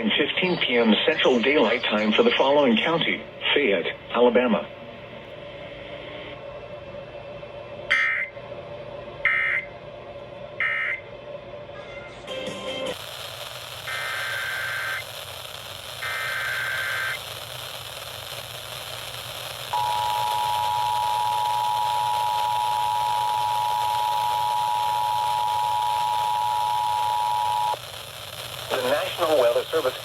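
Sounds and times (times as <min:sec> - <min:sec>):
steady hiss: 0:12.9 - 0:30.0
data tone bursts: 0:13.8 - 0:15.1, 0:16.0 - 0:17.3, 0:19.6 - 0:27.8
two-tone attention signal: 0:19.8 - 0:27.8.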